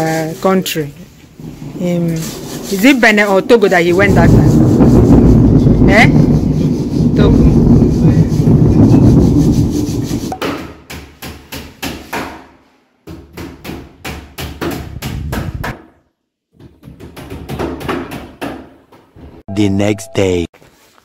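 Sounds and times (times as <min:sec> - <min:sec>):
hammer striking timber: 0:10.3 - 0:12.5.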